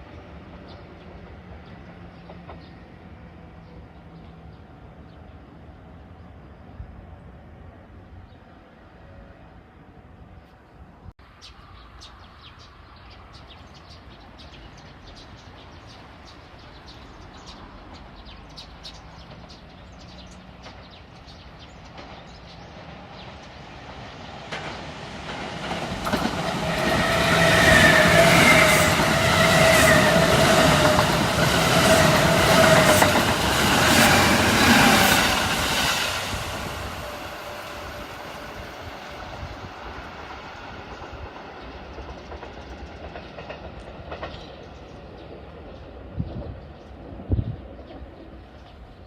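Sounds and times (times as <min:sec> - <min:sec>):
train wheels clicking on rails: 0:17.4 - 0:46.7
high whining train tones: 0:21.9 - 0:46.2.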